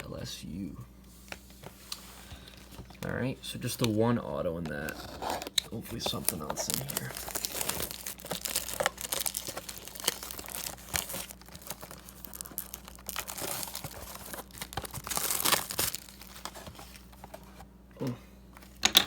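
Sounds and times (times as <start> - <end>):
plastic packaging tearing and crinkling: 4.7 - 17.6.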